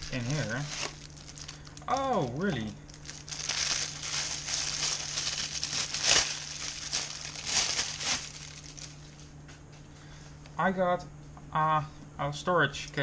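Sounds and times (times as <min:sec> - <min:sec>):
packaging crinkling and rustling: 0:00.0 - 0:09.4.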